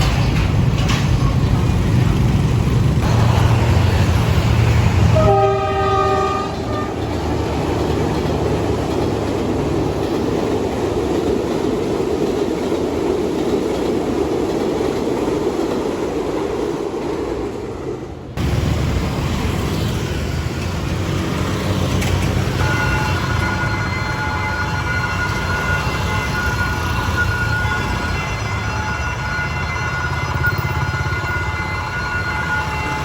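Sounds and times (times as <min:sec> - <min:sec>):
train running rumble: 0:00.0 - 0:33.0
train horn chord: 0:05.0 - 0:07.0.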